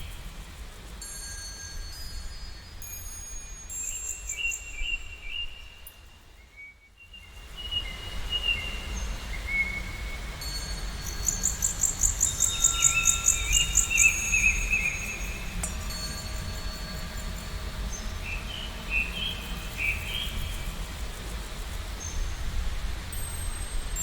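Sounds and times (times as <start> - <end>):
songbirds singing: 2.6 - 20.8.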